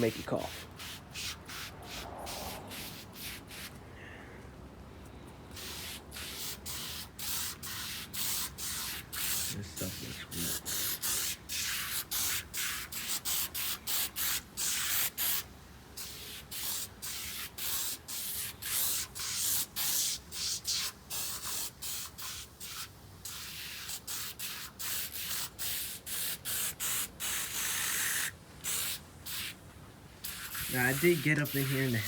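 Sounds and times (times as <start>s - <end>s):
aerosol can hissing in spurts: 16.0s - 29.6s, 30.2s - 32.0s.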